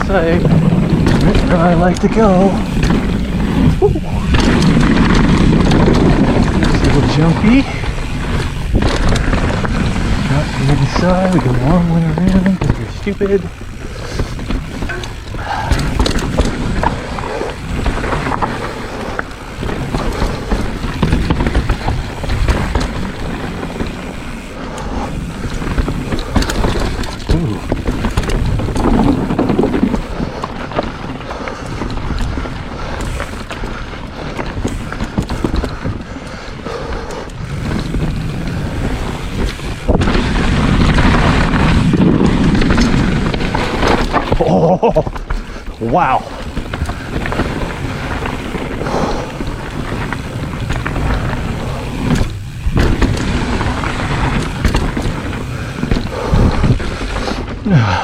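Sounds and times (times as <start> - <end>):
bike knocks and rattles: 0.0 - 58.0
bike tyres rolling over rock: 0.0 - 58.0
wind on microphone: 45.7 - 58.0.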